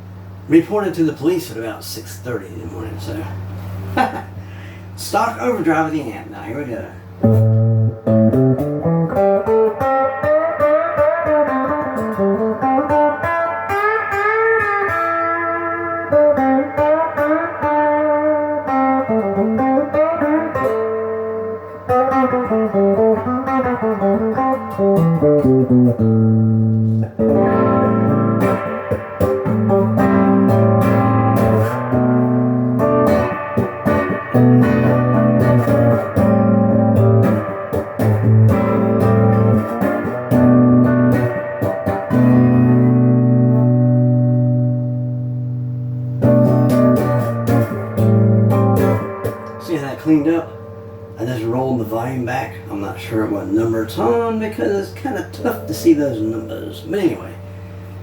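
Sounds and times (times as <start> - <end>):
overdriven electric guitar: 7.1 - 51.2.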